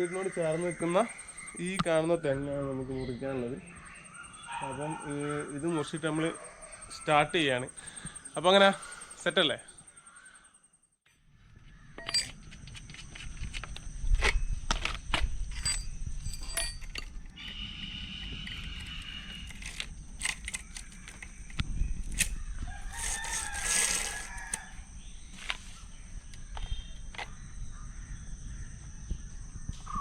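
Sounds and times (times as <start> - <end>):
rooster crowing: 17.3 - 19.6, 22.3 - 25.8.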